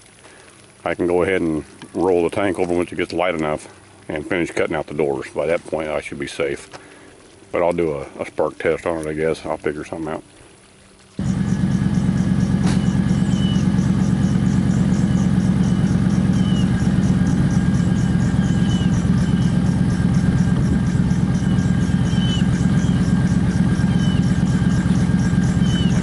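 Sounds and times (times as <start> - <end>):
faint high ticking: 0.0 - 26.0
engine idling: 11.1 - 26.0.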